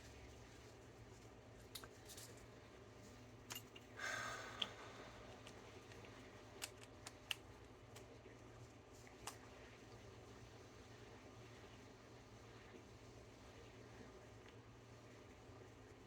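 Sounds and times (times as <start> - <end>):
faint steady hum: 0.0 - 16.0
light clicks and taps: 5.4 - 8.1.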